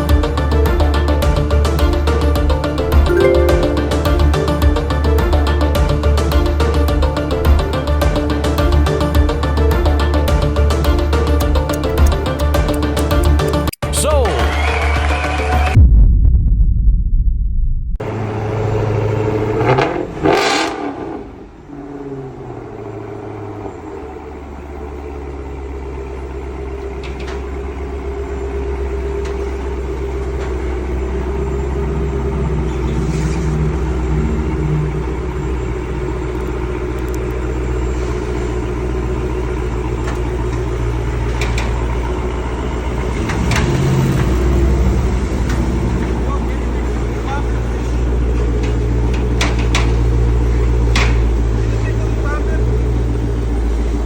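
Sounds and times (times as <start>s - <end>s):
vehicle engine running: 18.1s - 54.0s.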